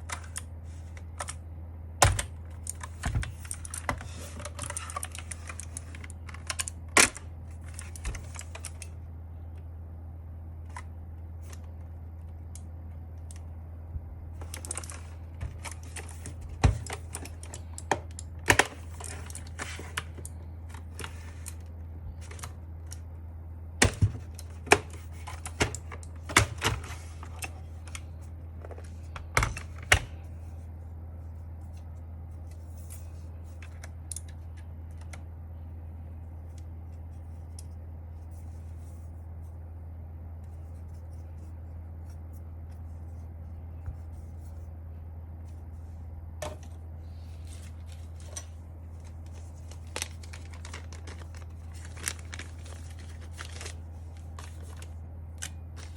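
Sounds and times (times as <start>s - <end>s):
steady low hum: 0.0s - 55.9s
plastic keyboard clicks and knocks: 2.0s - 7.2s, 23.8s - 28.0s.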